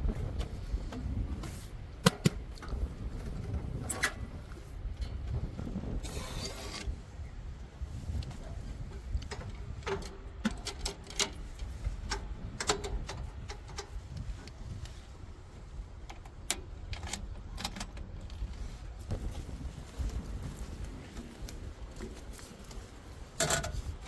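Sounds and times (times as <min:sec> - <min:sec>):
metallic clanks and rattles: 0:23.4 - 0:23.8.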